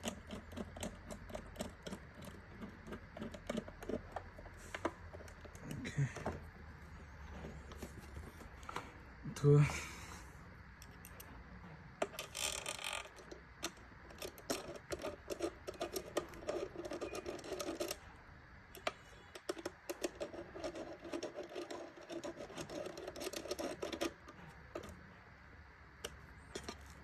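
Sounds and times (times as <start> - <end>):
screwdriver clicking and scraping: 0.0 - 6.5, 12.0 - 18.0, 18.7 - 25.0, 26.0 - 27.0.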